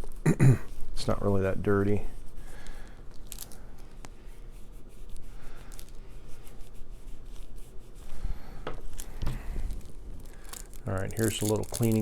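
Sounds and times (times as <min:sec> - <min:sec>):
handling ticks: 0:08.7 - 0:12.0.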